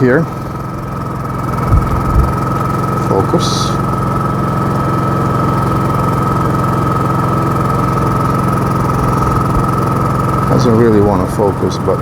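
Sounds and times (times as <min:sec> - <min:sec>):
generator engine running: 0:00.0 - 0:12.0
high whine: 0:01.4 - 0:04.3.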